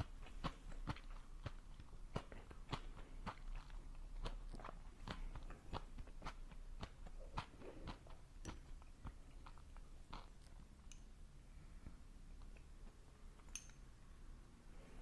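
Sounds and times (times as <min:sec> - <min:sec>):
person chewing crunchy food: 0:00.0 - 0:11.0.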